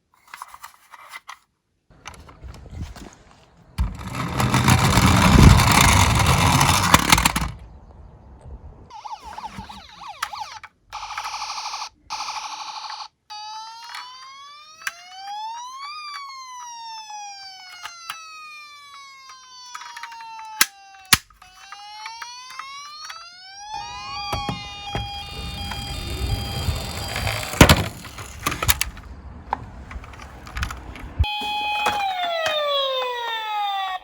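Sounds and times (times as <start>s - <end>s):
toy ambulance siren: 3.9s - 7.5s, 8.9s - 29.0s, 30.6s - 34.0s.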